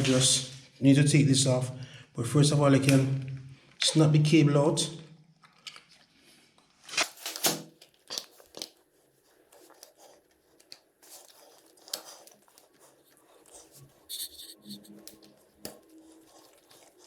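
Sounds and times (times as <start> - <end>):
rustling and scraping: 6.8 - 17.0.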